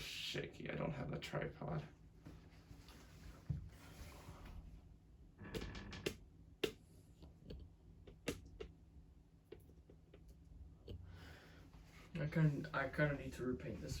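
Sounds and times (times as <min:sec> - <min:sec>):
ceiling fan motor hum: 0:00.0 - 0:14.0
irregular clicks and ticks: 0:05.4 - 0:08.8.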